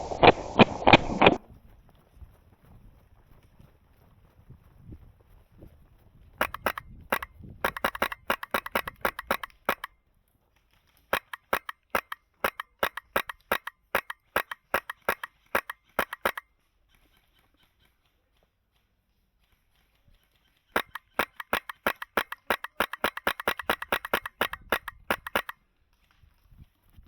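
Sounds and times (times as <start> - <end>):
airsoft rifle firing shots: 6.4 - 10.0, 11.1 - 16.5, 20.7 - 25.6.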